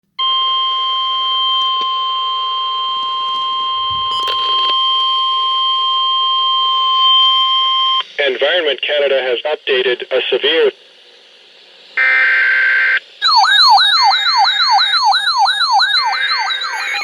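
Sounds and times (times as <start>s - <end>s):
two-pitch electronic alert tone: 3.8s - 4.6s, 13.2s - 17.0s.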